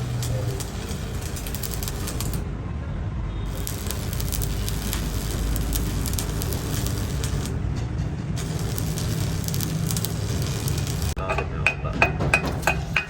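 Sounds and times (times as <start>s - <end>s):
electric arc welding hiss: 0.0s - 2.4s, 3.5s - 7.6s, 8.4s - 11.2s
ringing metal taps: 11.2s - 13.0s.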